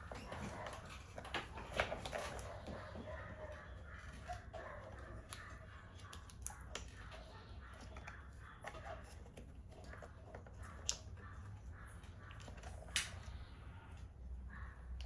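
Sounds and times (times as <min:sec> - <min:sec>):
faint small clicks and taps: 0:07.8 - 0:11.3.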